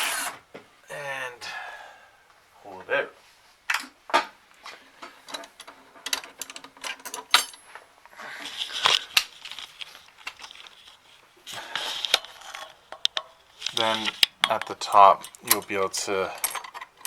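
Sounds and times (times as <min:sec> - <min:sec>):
scraping rattling handling noise: 0:05.0 - 0:17.0
sharp metal clicks: 0:13.0 - 0:17.0.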